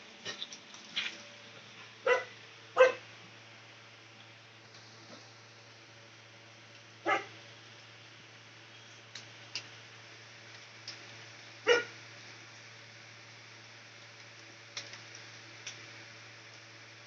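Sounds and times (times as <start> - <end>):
steady low hum: 0.0 - 17.0
dog barking: 2.0 - 3.0, 7.0 - 7.3, 11.6 - 11.9.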